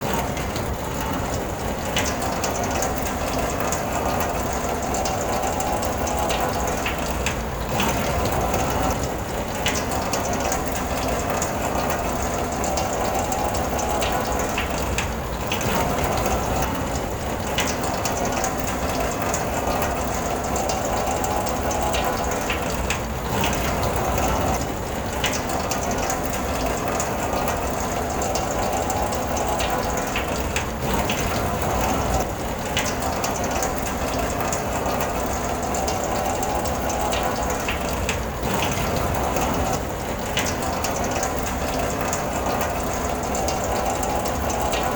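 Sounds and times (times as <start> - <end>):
rain on a car: 0.0 - 44.9.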